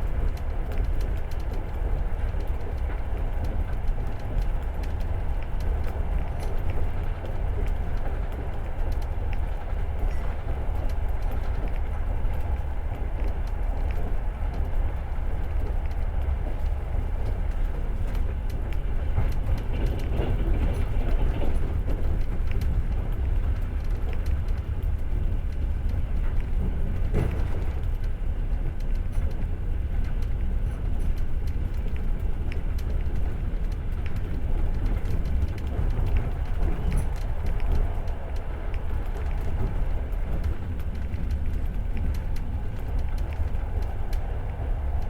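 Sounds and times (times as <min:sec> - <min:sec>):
train wheels rumbling on track: 0:00.0 - 0:45.0.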